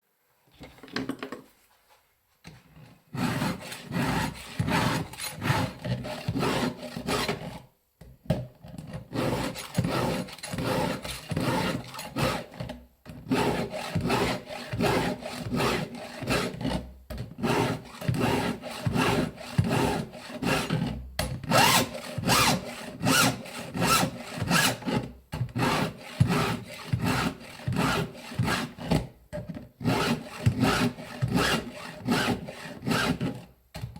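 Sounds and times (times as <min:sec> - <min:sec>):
file rasping on chainsaw chain: 0:03.2 - 0:07.6, 0:09.1 - 0:12.6, 0:13.3 - 0:21.0, 0:21.6 - 0:25.0, 0:25.6 - 0:29.0, 0:29.8 - 0:33.3.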